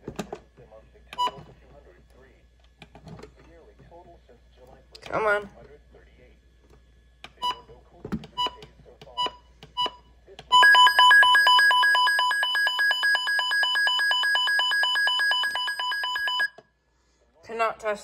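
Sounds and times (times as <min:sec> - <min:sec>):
fast-pulsing high alarm beep: 0:10.6 - 0:16.5.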